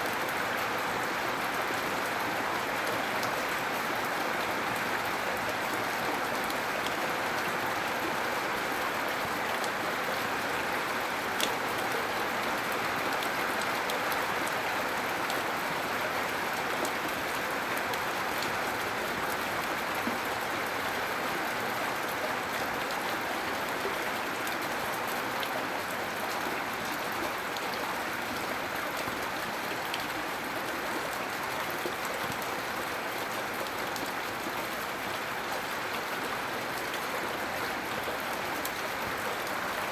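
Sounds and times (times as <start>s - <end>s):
gentle rain falling: 0.0s - 39.9s
faint raindrop ticks: 11.3s - 11.9s.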